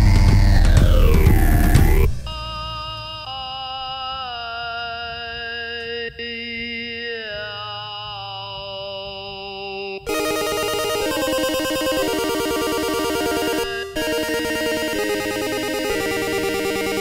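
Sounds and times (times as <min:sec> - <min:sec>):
busier music: 0:00.0 - 0:03.3, 0:10.1 - 0:17.0
held chord sliding down: 0:10.1 - 0:17.0.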